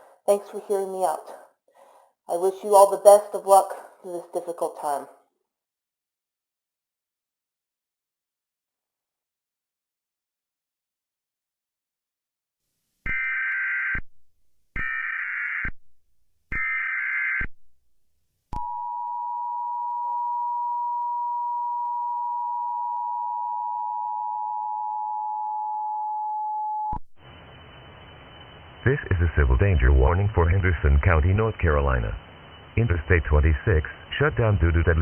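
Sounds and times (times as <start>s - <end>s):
digital data warble: 27.3s - 35.0s.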